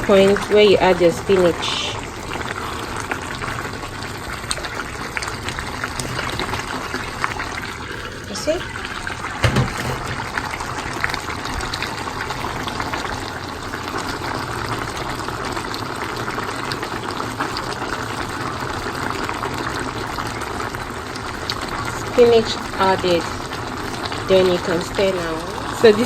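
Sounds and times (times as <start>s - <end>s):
soup bubbling in a pot: 0.0s - 26.0s.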